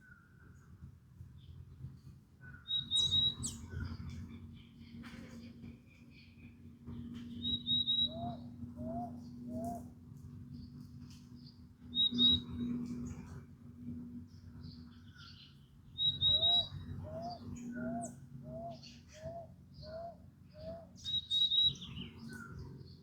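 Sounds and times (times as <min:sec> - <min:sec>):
wild birds singing and calling: 0:02.5 - 0:06.5, 0:07.3 - 0:09.9, 0:14.7 - 0:23.0.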